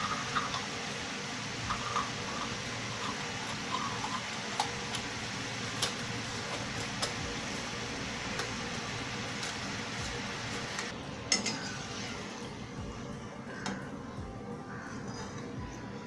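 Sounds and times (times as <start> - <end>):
food sizzling in hot oil: 0.0 - 12.8.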